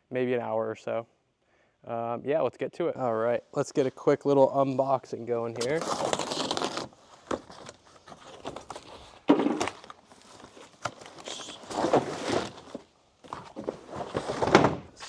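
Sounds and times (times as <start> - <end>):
cardboard box being opened: 5.6 - 15.0
packaging scraping and rustling: 5.6 - 15.0.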